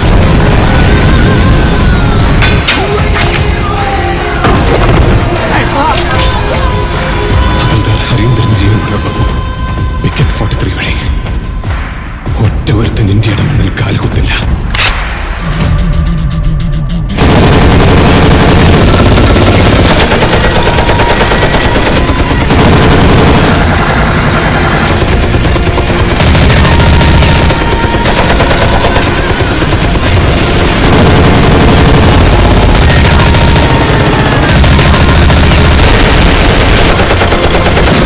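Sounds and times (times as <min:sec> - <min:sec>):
rapid machine-gun fire: 0:17.2 - 0:38.0.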